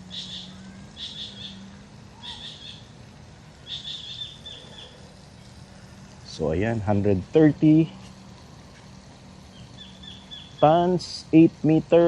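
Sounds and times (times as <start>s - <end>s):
bird chirping: 0.0s - 2.9s, 3.6s - 5.6s, 9.5s - 10.9s.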